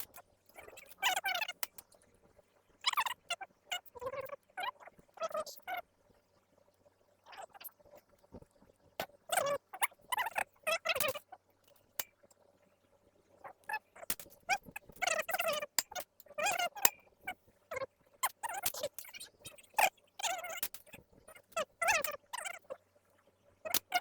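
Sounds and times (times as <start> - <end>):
sharp metal clicks and taps: 14.1 - 14.4, 20.6 - 20.9.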